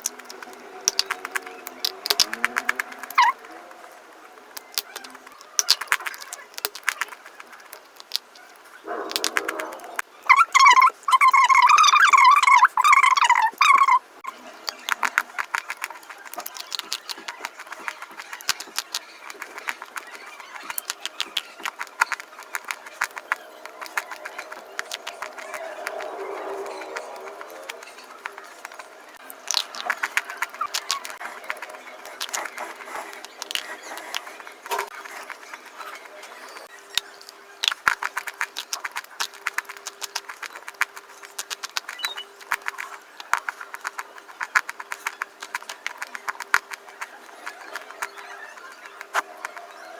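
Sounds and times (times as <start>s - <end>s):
animal chewing crunchy food: 0.0s - 3.7s, 4.5s - 49.9s.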